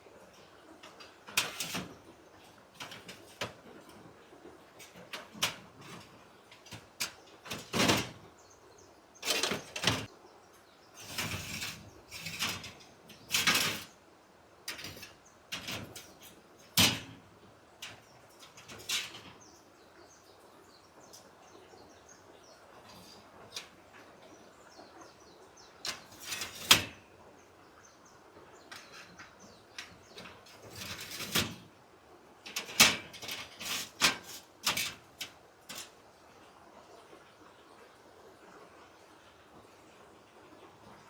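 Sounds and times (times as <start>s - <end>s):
knocks and clatters of handling: 0.8s - 4.1s, 4.7s - 8.3s, 9.2s - 10.1s, 11.0s - 14.0s, 14.7s - 19.5s, 25.8s - 27.0s, 28.7s - 31.7s, 32.4s - 36.0s.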